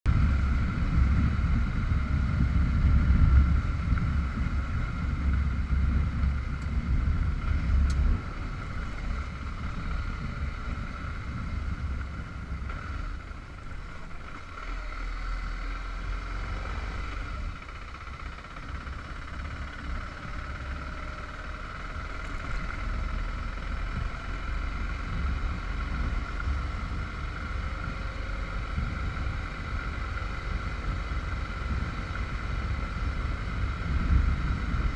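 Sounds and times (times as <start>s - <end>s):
wind noise on microphone: 0.1s - 14.2s, 21.7s - 34.9s
motorcycle engine rumbling: 0.1s - 34.9s.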